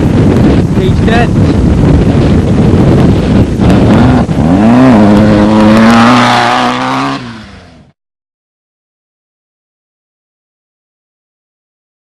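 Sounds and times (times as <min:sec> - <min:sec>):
race car engine revving: 0:03.6 - 0:07.9.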